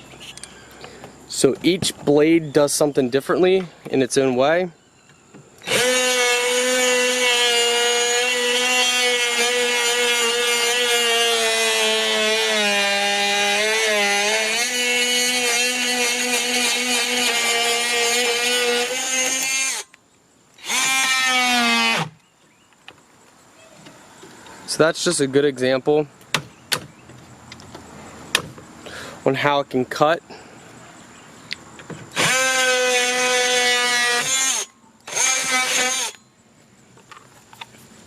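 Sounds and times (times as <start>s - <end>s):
oscillating multi-tool buzzing: 5.6s - 20.0s, 20.6s - 22.2s, 32.1s - 36.3s.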